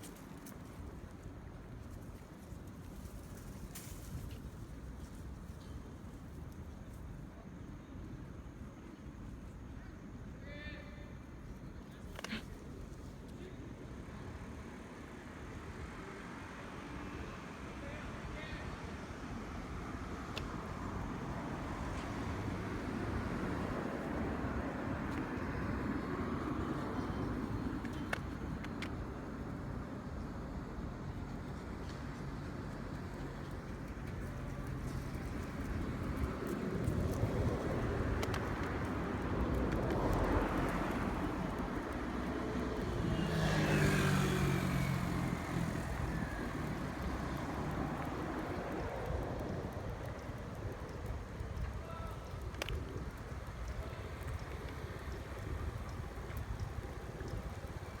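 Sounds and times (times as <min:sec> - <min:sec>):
road traffic passing: 0:11.9 - 0:58.0
vehicle passing by: 0:34.6 - 0:50.0.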